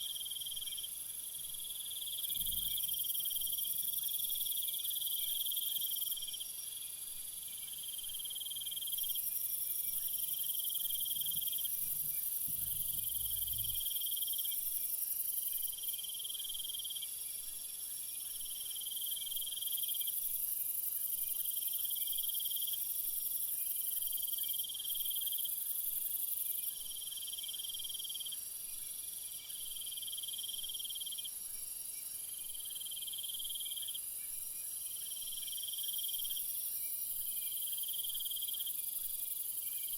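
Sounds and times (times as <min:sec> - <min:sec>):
lower insect call: 0:00.0 - 0:39.9
crickets trilling: 0:07.7 - 0:16.4.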